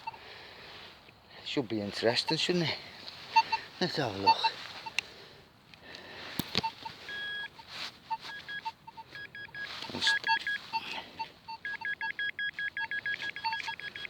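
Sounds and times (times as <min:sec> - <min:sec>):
metal detector beeps: 0:02.1 - 0:02.5, 0:03.3 - 0:05.0, 0:06.5 - 0:14.0.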